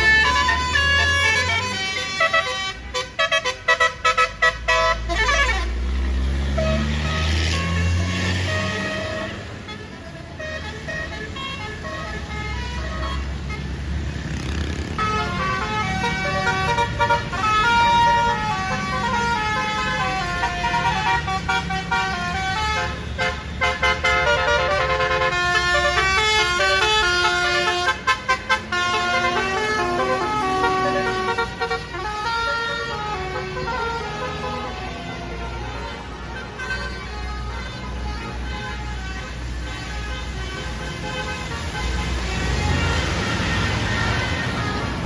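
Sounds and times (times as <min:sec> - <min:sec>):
air horn playing a tune: 0:00.0 - 0:05.8, 0:06.5 - 0:13.6, 0:15.0 - 0:43.4
bus engine rumble: 0:00.0 - 0:45.0.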